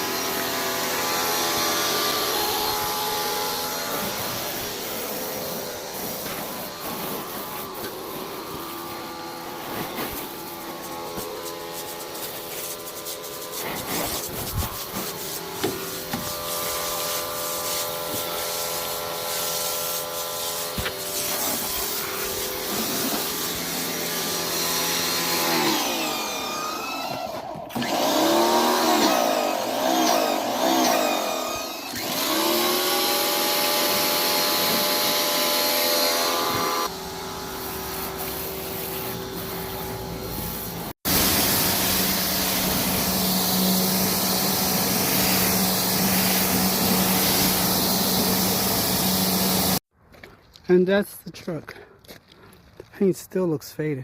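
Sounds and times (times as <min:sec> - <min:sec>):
pressure washer motor humming: 0:00.0 - 0:49.8
water jet hissing: 0:09.6 - 0:24.0, 0:37.6 - 0:49.8.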